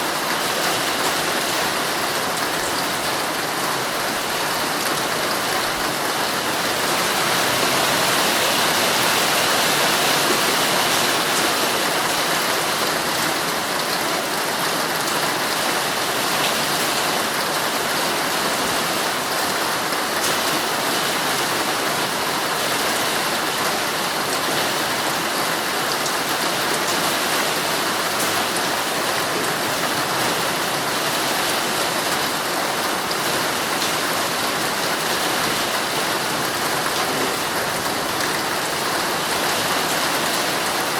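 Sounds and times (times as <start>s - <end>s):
heavy rain on tent fabric: 0.0s - 40.9s.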